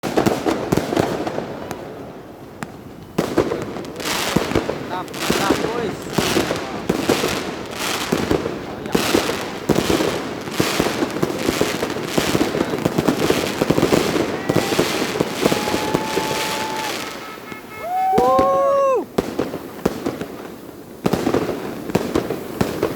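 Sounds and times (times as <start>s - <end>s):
fireworks bangs: 0.0s - 22.9s
fireworks crackling and popping: 0.0s - 22.9s
faint whistle-like tone: 15.3s - 19.0s.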